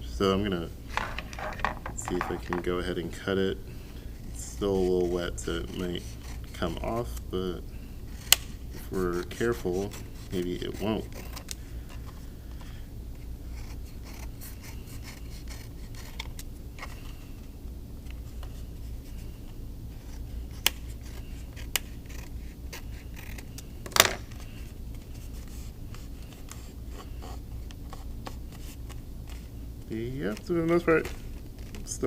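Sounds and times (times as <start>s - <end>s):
scissors snipping paper: 20.5s - 23.6s.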